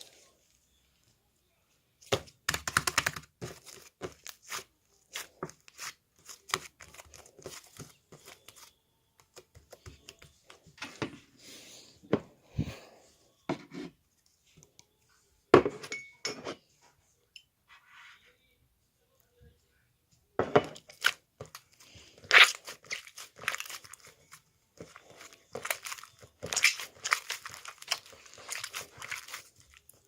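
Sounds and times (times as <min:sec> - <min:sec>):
crinkling and tearing handling noise: 0:20.8 - 0:30.0.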